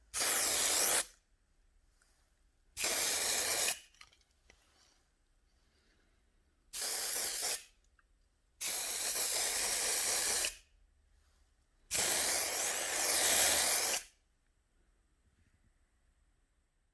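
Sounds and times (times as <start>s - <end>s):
aerosol spray paint hissing: 0.1s - 1.1s, 2.8s - 3.9s, 6.8s - 7.7s, 8.6s - 10.6s, 11.9s - 14.1s.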